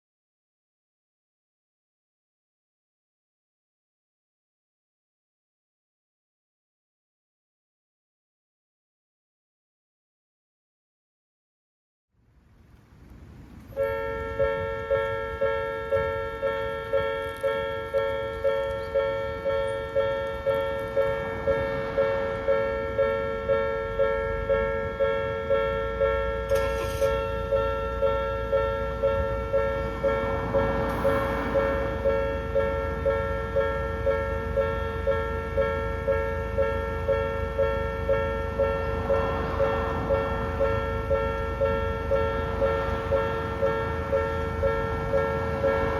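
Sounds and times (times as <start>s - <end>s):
level crossing electronic bell: 13.8s - 45.9s.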